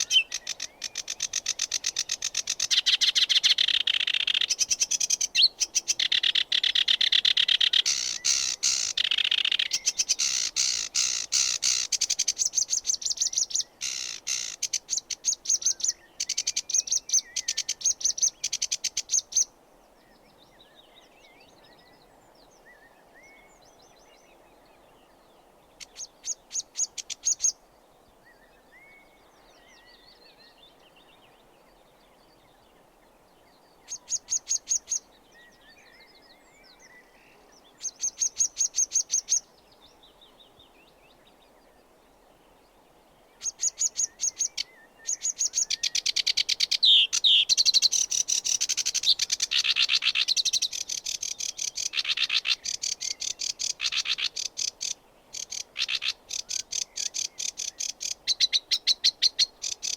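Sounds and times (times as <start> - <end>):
warbler singing: 0.0 - 19.5, 33.5 - 41.8, 43.3 - 59.9.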